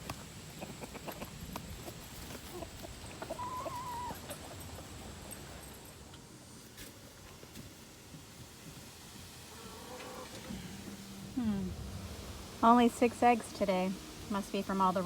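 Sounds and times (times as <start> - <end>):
chickens clucking: 0.0 - 6.2, 8.0 - 15.0
hen drawn-out wavering call: 3.3 - 4.2.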